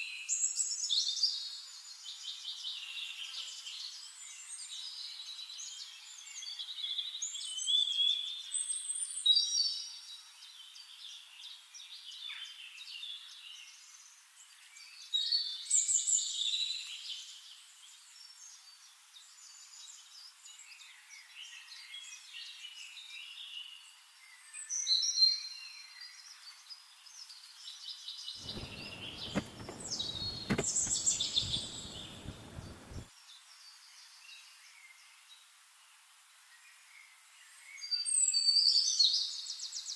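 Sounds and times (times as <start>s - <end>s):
low rustling: 28.4s - 33.1s
sharp clicks: 28.4s - 33.1s
songbirds singing and chirping: 28.4s - 33.1s.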